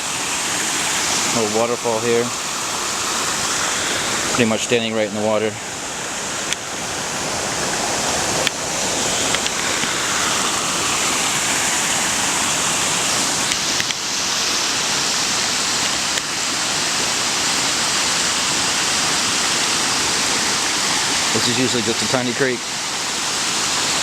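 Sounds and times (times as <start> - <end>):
floodwater rushing: 0.0 - 24.0.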